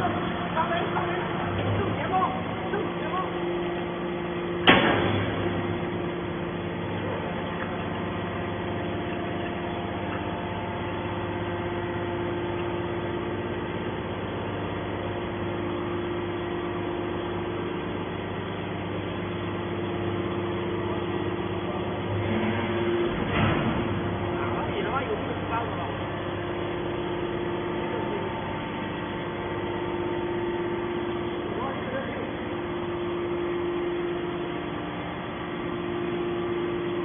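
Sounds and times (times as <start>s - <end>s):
hydraulic power unit humming: 0.0s - 37.0s.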